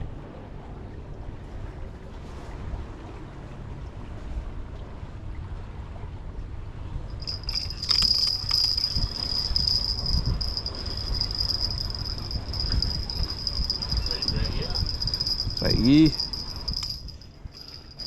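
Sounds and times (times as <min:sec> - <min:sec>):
low rumble of wind and water: 0:00.0 - 0:18.0
insect trilling: 0:07.3 - 0:18.0.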